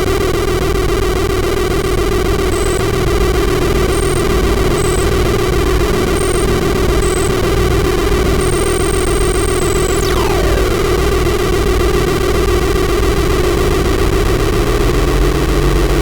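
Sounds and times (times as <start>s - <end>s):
electronic noise music: 1.8s - 16.0s
high tone sweeping down: 8.4s - 11.5s.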